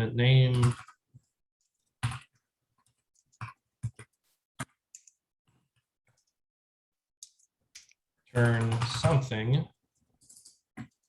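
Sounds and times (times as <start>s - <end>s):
computer keyboard keystrokes: 7.2s - 9.2s, 10.2s - 11.0s.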